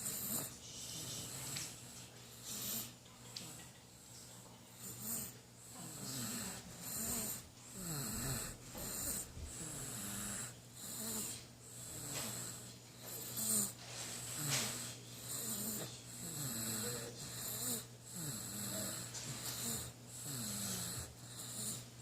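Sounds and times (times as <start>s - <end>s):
baby snoring: 0.0s - 0.6s, 4.8s - 21.9s.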